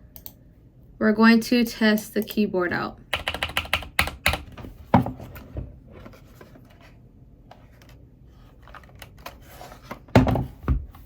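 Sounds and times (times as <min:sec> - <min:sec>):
keyboard keys clicking: 0:03.1 - 0:04.5.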